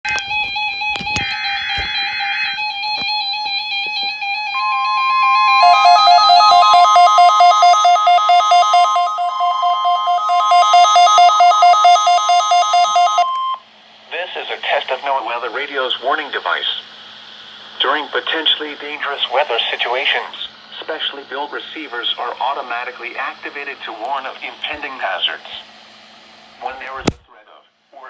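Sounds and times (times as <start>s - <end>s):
steady warning alarm tone: 4.2s - 13.6s
music: 4.4s - 13.2s
warbly data tones: 4.6s - 13.2s
rapidly pulsing beep: 4.6s - 13.4s.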